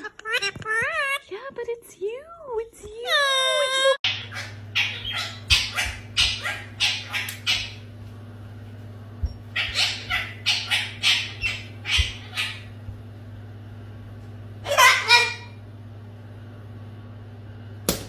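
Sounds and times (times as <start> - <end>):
parrot squawking: 4.0 - 7.9, 9.5 - 12.8, 14.6 - 15.6.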